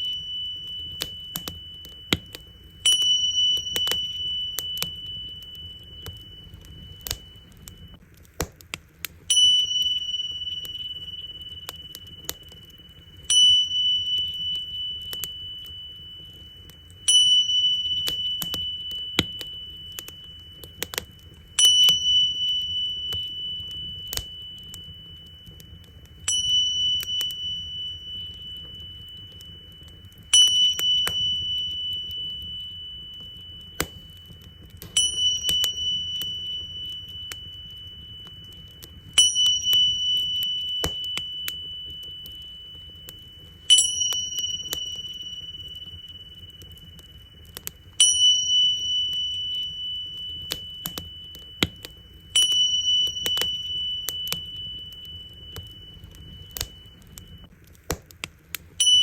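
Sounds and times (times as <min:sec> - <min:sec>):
cymbals ringing: 0:00.0 - 0:02.1, 0:34.9 - 0:43.0, 0:43.7 - 0:46.3
wood fire crackling: 0:00.0 - 0:59.0.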